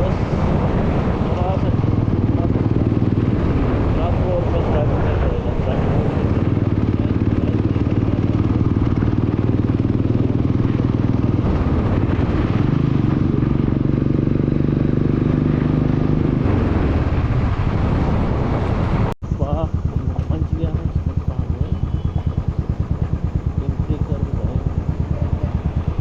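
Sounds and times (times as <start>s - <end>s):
motorcycle engine and exhaust: 0.0s - 26.0s.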